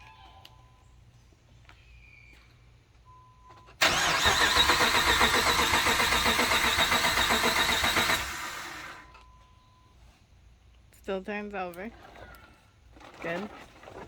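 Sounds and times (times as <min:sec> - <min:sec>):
truck engine cranking: 0:03.8 - 0:09.2.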